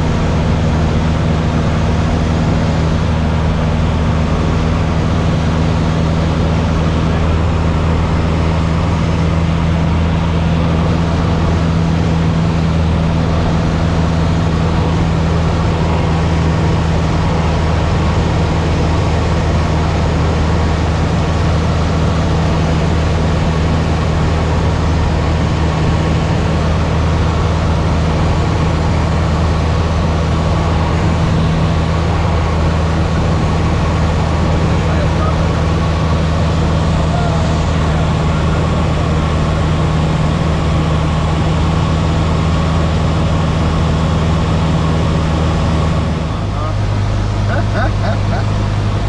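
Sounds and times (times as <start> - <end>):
airplane engine drone in cabin: 0.0 - 49.0.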